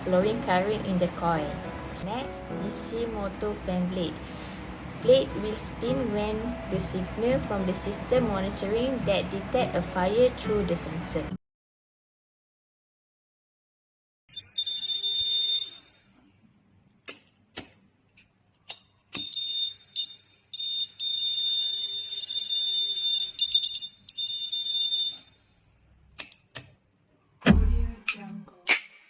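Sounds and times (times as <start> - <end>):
high-pitched alarm buzzer: 14.3 - 16.0, 19.2 - 25.4.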